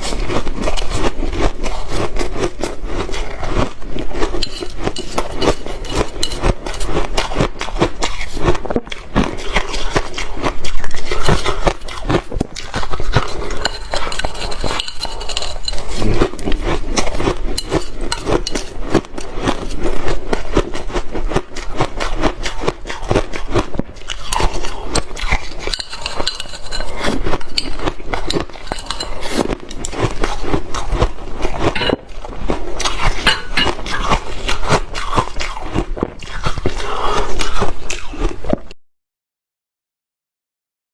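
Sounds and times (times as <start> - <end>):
shaved ice crunching and scraping: 0.0 - 8.6, 9.3 - 20.6, 24.1 - 32.2
chopsticks clinking on ice and dish: 4.2 - 7.3, 10.9 - 19.7, 24.1 - 30.9, 31.6 - 32.1, 32.8 - 34.2.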